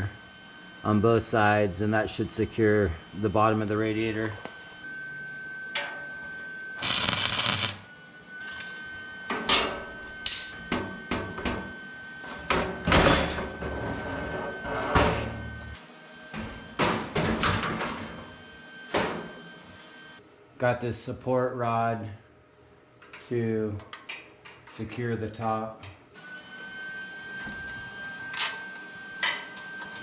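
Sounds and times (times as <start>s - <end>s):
arc welding crackle: 6.8s - 7.9s.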